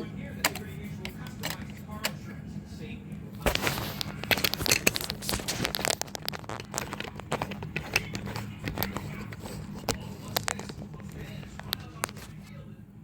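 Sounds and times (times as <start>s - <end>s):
faint low hum: 0.0s - 13.0s
plastic packaging crinkling: 3.4s - 12.5s.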